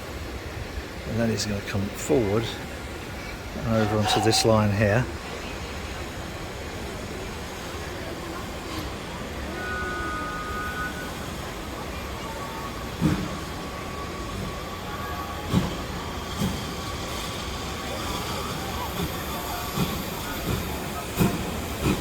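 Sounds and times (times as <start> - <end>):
train rumbling slowly: 0.0 - 22.0
sharp knocks from train wheels: 12.9 - 13.5, 15.4 - 17.4, 18.9 - 22.0.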